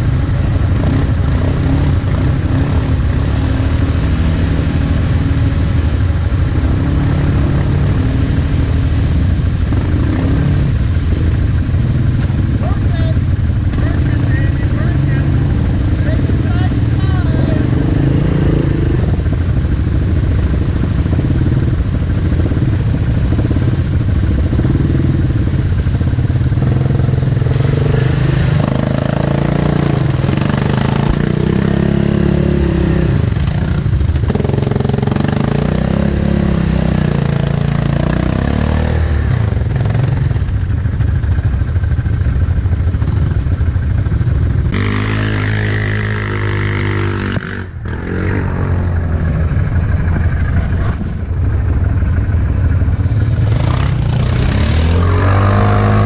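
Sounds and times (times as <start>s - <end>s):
engine revving: 0.0s - 40.6s, 44.6s - 56.0s.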